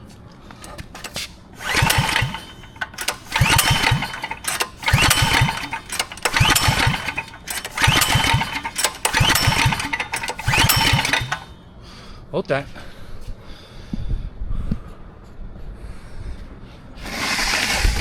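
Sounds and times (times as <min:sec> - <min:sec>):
recoil starter rope whir: 0:00.6 - 0:11.5, 0:17.0 - 0:18.0
engine cranking over: 0:00.6 - 0:11.6, 0:17.0 - 0:18.0.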